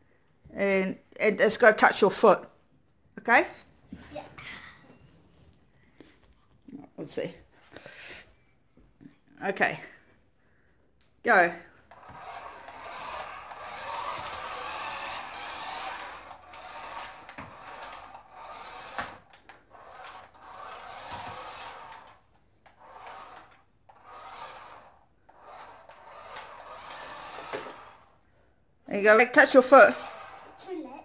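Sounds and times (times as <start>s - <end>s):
toy car motor whirring: 11.9s - 28.2s, 29.2s - 30.9s.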